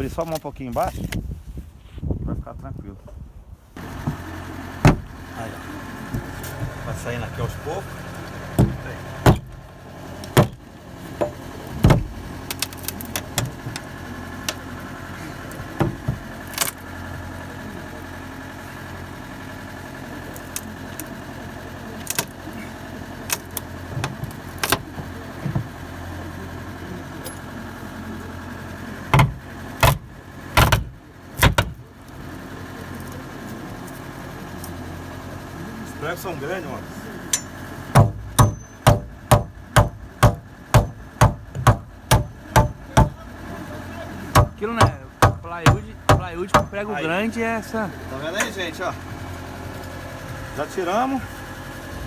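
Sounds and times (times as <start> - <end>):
motor hum: 3.8 - 52.0
knocks and bangs on wooden boards: 4.8 - 5.2, 8.6 - 9.6, 10.4 - 10.6, 11.2 - 12.2, 15.7 - 16.3, 23.9 - 25.8, 29.1 - 31.8, 37.9 - 43.3, 44.3 - 46.8.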